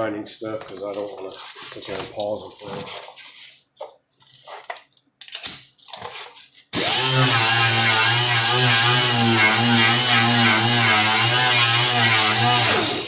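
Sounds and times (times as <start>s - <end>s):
electric grinder grinding metal: 6.8s - 13.0s.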